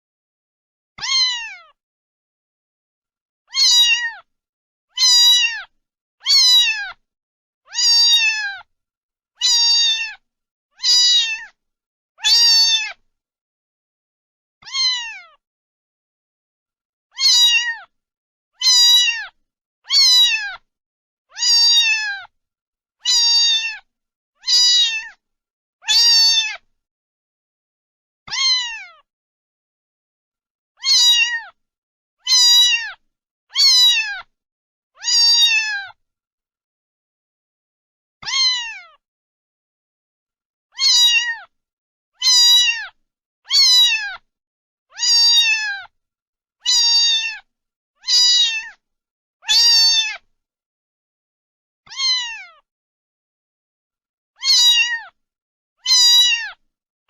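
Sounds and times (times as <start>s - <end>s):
cat meowing: 1.0s - 1.8s, 3.5s - 4.3s, 4.9s - 7.0s, 7.7s - 8.7s, 9.4s - 10.2s, 10.8s - 11.6s, 12.2s - 13.0s, 14.6s - 15.4s, 17.1s - 17.9s, 18.6s - 20.7s, 21.3s - 22.3s, 23.0s - 25.2s, 25.8s - 26.6s, 28.3s - 29.1s, 30.8s - 31.6s, 32.2s - 34.3s, 35.0s - 36.0s, 38.2s - 39.0s, 40.7s - 41.5s, 42.2s - 44.2s, 44.9s - 45.9s, 46.6s - 48.8s, 49.4s - 50.2s, 51.9s - 52.7s, 54.4s - 55.2s, 55.8s - 56.6s.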